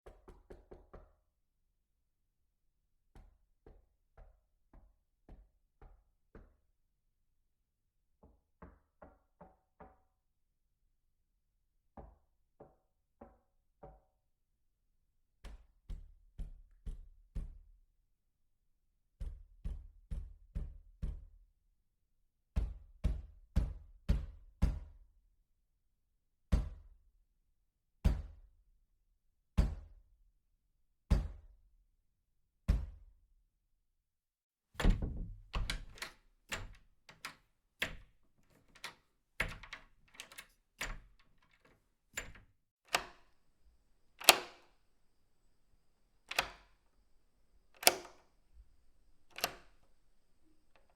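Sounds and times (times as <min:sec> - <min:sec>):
knocking on a door: 0:00.0 - 0:01.2, 0:15.4 - 0:17.7, 0:19.2 - 0:21.4, 0:22.6 - 0:25.0, 0:26.5 - 0:26.9, 0:28.1 - 0:28.4, 0:29.6 - 0:29.9, 0:31.1 - 0:31.5, 0:32.7 - 0:33.1, 0:34.8 - 0:36.7.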